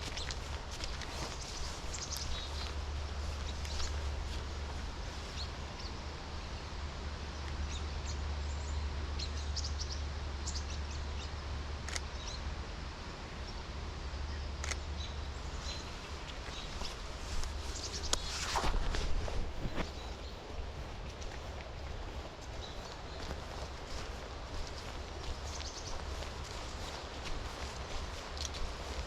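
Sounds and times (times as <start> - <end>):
distant bird chirps: 0.0 - 6.1, 19.6 - 29.0
wind in forest: 0.0 - 29.0
steady rain: 20.6 - 29.0.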